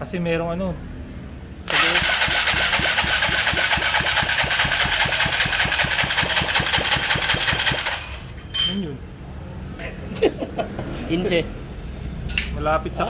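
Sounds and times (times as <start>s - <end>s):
electric starter cranking engine: 1.6s - 8.3s.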